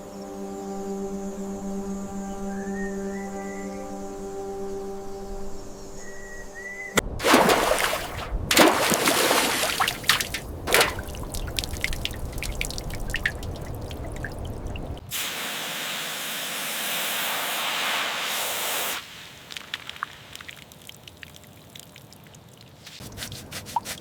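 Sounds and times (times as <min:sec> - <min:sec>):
water splashing and dripping: 0:07.0 - 0:15.1, 0:18.9 - 0:24.0
water spraying hiss: 0:07.2 - 0:20.9, 0:22.8 - 0:24.0.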